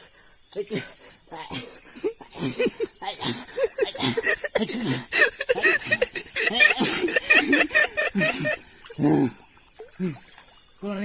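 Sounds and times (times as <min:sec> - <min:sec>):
crickets trilling: 0:00.0 - 0:11.0
people talking and chuckling: 0:02.0 - 0:08.7.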